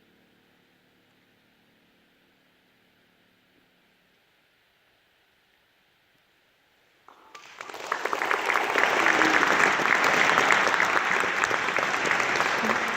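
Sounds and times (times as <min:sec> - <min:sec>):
audience applause: 0:07.1 - 0:12.9.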